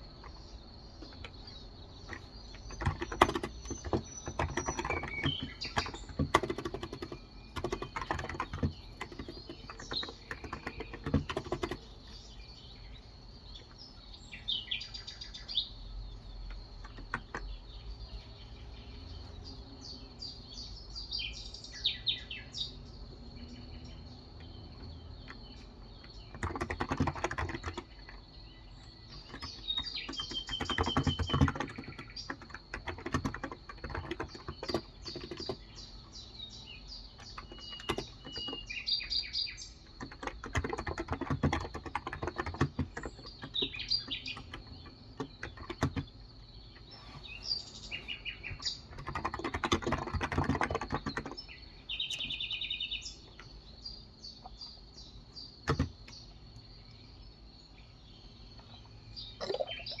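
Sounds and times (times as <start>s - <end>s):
birds chirping: 0.0s - 60.0s
keyboard typing: 0.2s - 12.4s, 16.5s - 17.6s, 24.8s - 28.3s, 28.9s - 36.1s, 37.1s - 38.9s, 39.8s - 46.2s, 48.0s - 51.5s, 55.6s - 56.2s, 59.4s - 60.0s.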